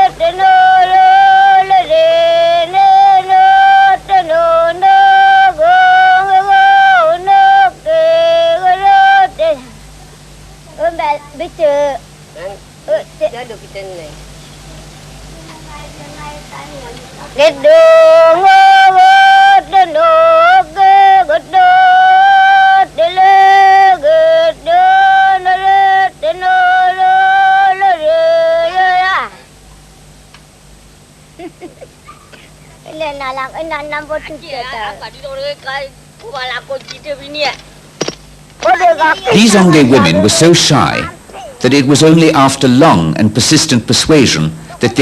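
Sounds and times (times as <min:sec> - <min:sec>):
high voice singing chant-like melody: 0:00.0 - 0:09.8, 0:15.9 - 0:29.5, 0:38.8 - 0:43.0.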